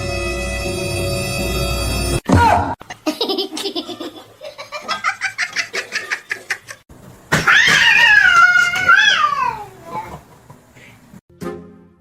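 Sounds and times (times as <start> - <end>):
music: 0.0 - 2.2, 11.3 - 12.0.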